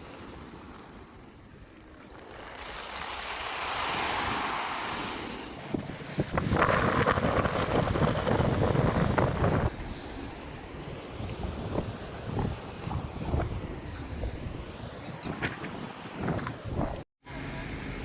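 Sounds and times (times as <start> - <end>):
waves breaking on pebble beach: 0.0 - 9.7
wind buffeting microphone: 5.5 - 17.0.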